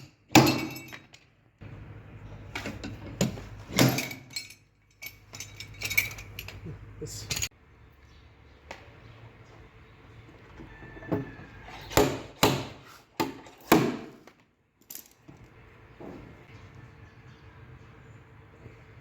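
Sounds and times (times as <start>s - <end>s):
metal tools knocking on metal: 2.6s - 6.6s.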